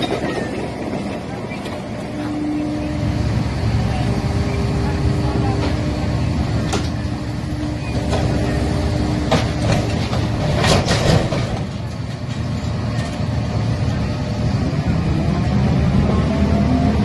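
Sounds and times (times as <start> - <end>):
excavator diesel engine running: 0.0 - 17.0
clatter of debris: 9.3 - 13.2.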